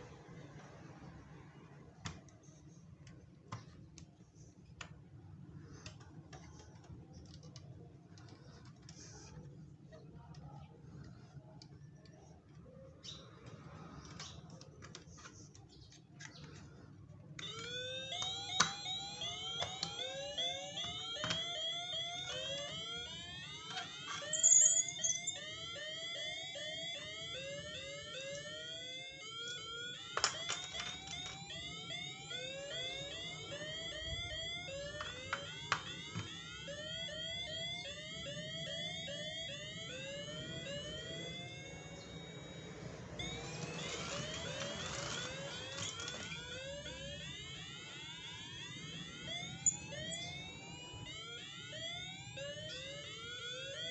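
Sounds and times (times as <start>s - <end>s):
rising electronic chirps: 17.4s - 30.1s, 31.6s - 53.9s.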